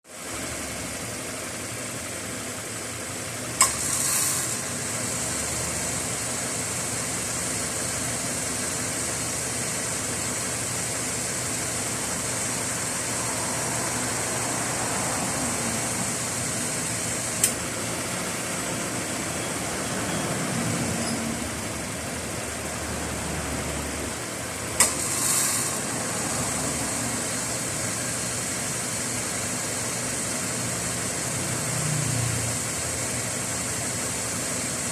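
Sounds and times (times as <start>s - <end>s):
car engine idling: 0.1s - 34.9s
compressor clutch clicking: 3.6s - 4.6s, 24.7s - 25.9s.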